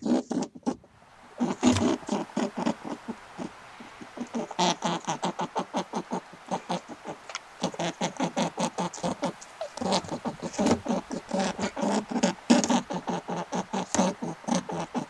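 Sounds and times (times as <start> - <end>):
animal making short calls: 0.0 - 15.0.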